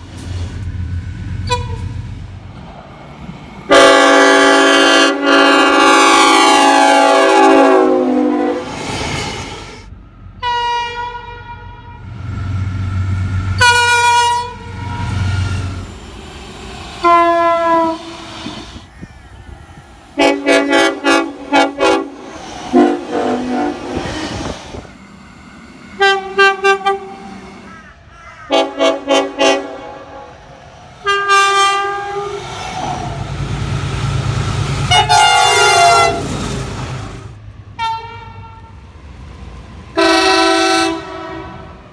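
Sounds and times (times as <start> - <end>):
low train rumble: 0.0 - 41.9
locomotive air horn blasts: 1.4 - 1.9, 3.7 - 8.7, 10.4 - 12.2, 13.5 - 15.2, 17.0 - 18.2, 20.2 - 24.1, 26.0 - 27.4, 28.5 - 30.4, 31.0 - 32.4, 34.8 - 36.4, 37.8 - 38.8, 40.0 - 41.8.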